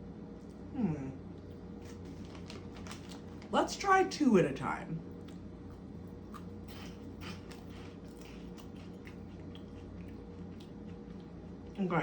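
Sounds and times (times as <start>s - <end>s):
person chewing crunchy snacks: 5.2s - 11.8s.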